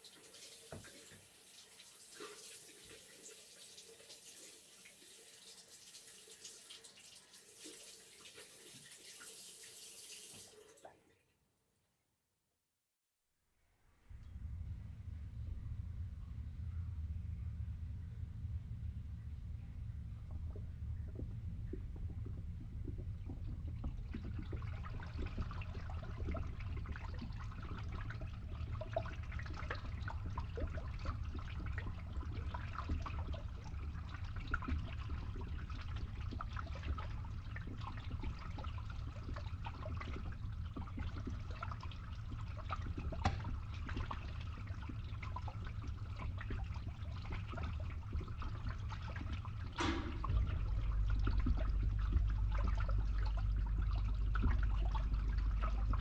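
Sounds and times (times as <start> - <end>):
water trickling and splashing: 0.0 - 10.9, 20.3 - 56.0
steady low rumble: 14.0 - 56.0.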